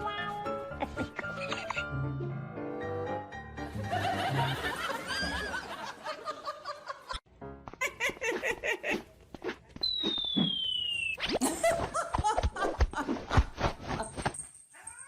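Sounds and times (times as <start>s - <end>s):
background music: 0.0s - 8.8s
people laughing: 0.8s - 1.9s, 3.7s - 7.2s, 7.8s - 9.2s, 11.4s - 13.5s
descending whistle-like tone: 9.8s - 11.4s.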